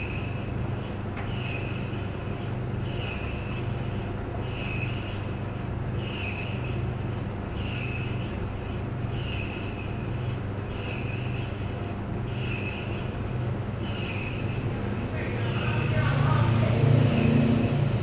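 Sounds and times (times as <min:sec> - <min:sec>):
clothes dryer humming: 0:00.0 - 0:18.0.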